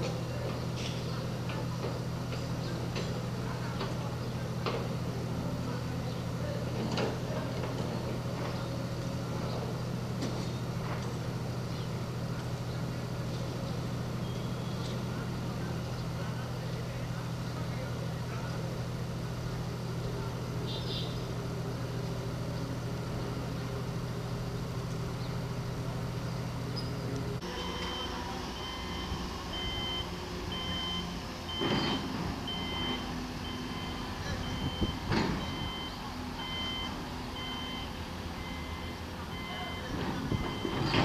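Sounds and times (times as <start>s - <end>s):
diesel engine running: 0.0s - 41.0s
reversing alarm beeping: 27.5s - 41.0s.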